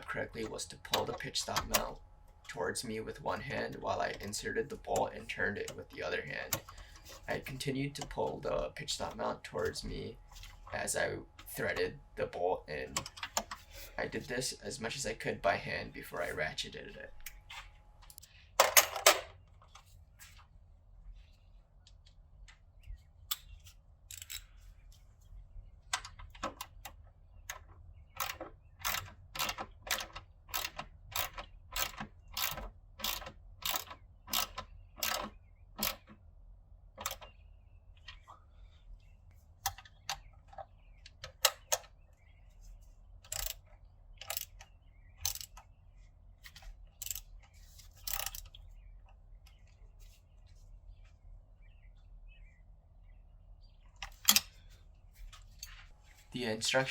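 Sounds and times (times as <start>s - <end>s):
hand ratchet clicking: 28.2s - 36.1s, 43.3s - 43.6s, 44.2s - 44.6s, 45.2s - 45.6s, 47.0s - 47.2s, 48.0s - 48.5s.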